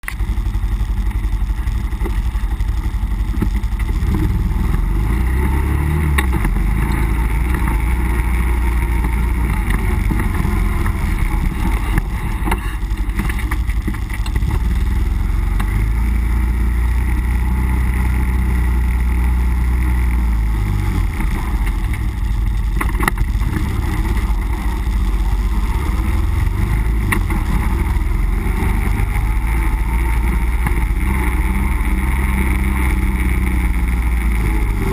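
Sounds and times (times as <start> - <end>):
vehicle engine droning under load: 0.0 - 34.9
vehicle knocks and rattles: 9.0 - 14.6.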